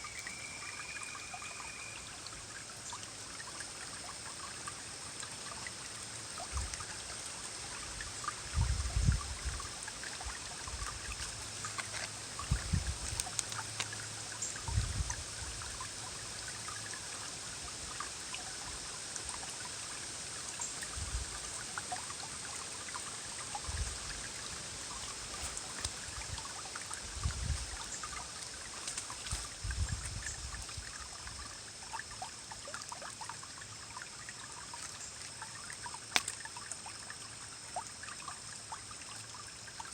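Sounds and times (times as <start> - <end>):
stream rippling over rocks: 0.0 - 39.9.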